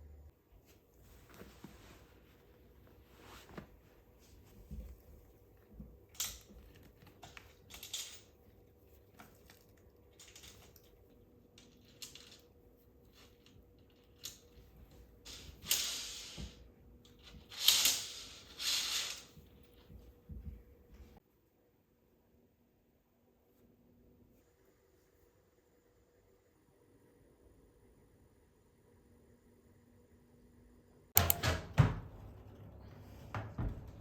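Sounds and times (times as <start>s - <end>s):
rustling scrapes: 0.6s - 5.1s.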